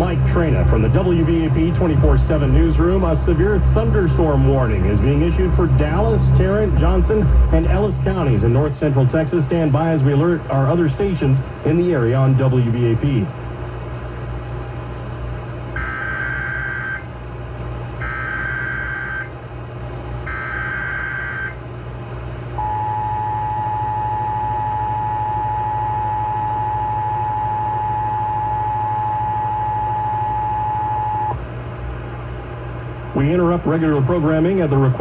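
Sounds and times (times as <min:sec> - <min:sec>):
digital header bursts: 0:00.0 - 0:09.3
steady low hum: 0:00.0 - 0:35.0
two-tone attention signal: 0:22.6 - 0:31.4.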